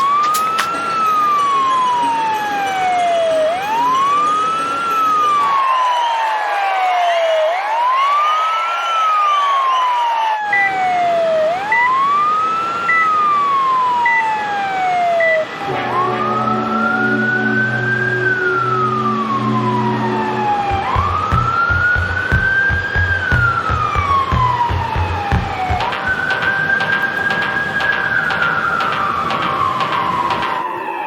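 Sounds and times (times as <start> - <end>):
ambulance wail siren: 0.0 - 31.0
slow sweeping siren: 0.0 - 31.0
low rumbling knocks: 20.7 - 26.2.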